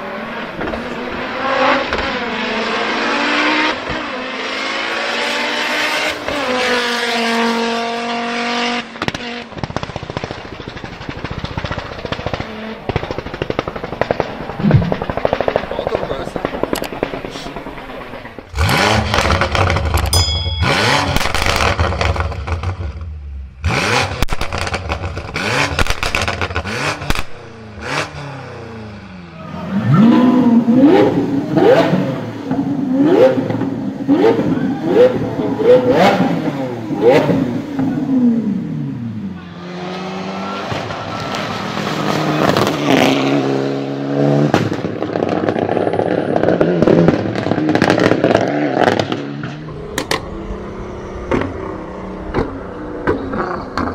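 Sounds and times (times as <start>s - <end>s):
engine revving and crackling: 0.0s - 53.9s
car exhaust pops and backfires: 1.8s - 2.3s, 3.7s - 4.2s, 8.2s - 28.3s, 31.6s - 34.5s, 40.6s - 43.5s, 44.4s - 50.3s, 51.3s - 51.7s, 52.3s - 53.9s
second engine revving: 12.4s - 45.3s, 46.6s - 53.9s.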